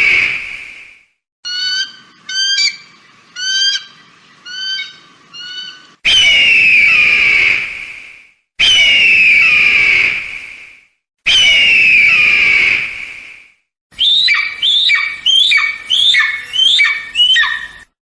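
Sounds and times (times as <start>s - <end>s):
eagle calling: 1.4s - 7.1s, 14.0s - 18.0s.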